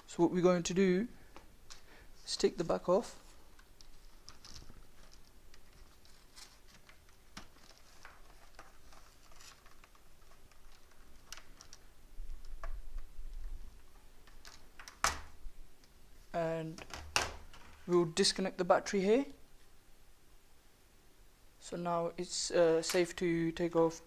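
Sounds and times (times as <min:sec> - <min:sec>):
clicks and taps on plastic cover: 0:06.7 - 0:11.8.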